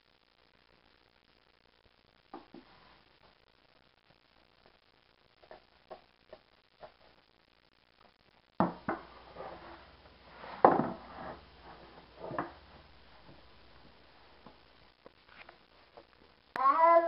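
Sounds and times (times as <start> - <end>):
sharp knocks and thumps: 8.6 - 9.1.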